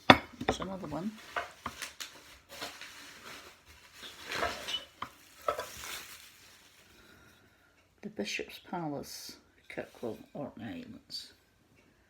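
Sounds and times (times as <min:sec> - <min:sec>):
ceramic plates scraping: 0:00.0 - 0:01.9, 0:04.0 - 0:06.0, 0:09.0 - 0:11.4.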